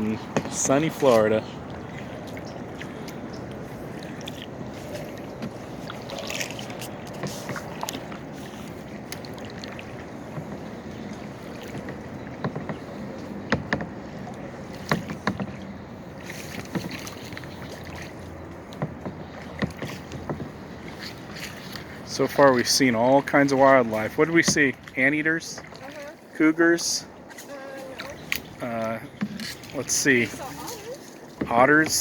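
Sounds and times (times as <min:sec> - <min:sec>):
paddles splashing in water: 0:00.0 - 0:32.0
sharp knocks and clicks: 0:11.7 - 0:12.9, 0:13.5 - 0:14.0, 0:14.8 - 0:15.6, 0:18.7 - 0:20.6.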